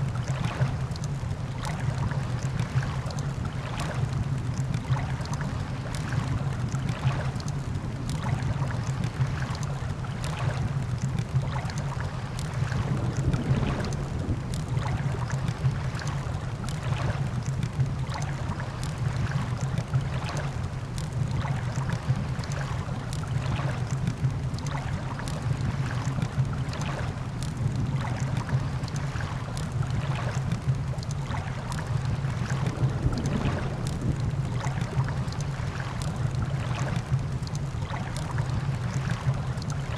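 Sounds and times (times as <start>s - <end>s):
wind: 0.0s - 39.9s
campfire crackling and popping: 32.6s - 36.5s, 37.2s - 38.4s.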